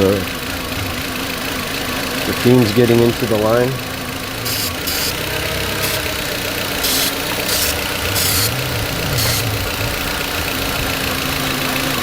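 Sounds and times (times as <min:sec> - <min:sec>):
car engine idling: 0:00.0 - 0:12.0
aerosol can spraying: 0:04.5 - 0:05.2, 0:05.8 - 0:06.1, 0:06.8 - 0:08.6.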